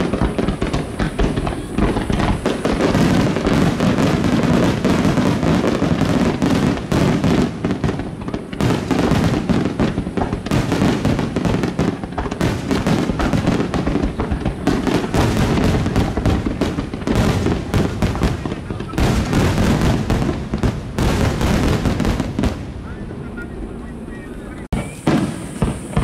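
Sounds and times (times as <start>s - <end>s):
firework shell bursts and crackling: 0.0s - 22.9s, 24.7s - 26.0s
deep firework booms: 0.0s - 24.1s, 24.7s - 26.0s.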